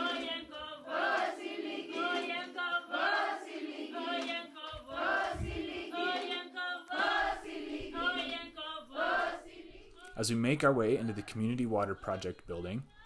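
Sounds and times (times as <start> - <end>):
choir singing chant-like phrase: 0.0 - 12.3.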